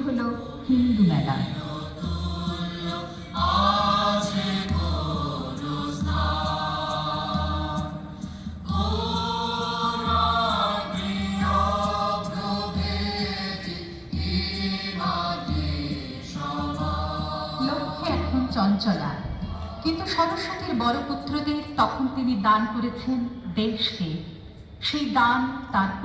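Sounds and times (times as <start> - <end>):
group singing in unison: 0.0 - 19.9
low drum beat: 0.9 - 19.9.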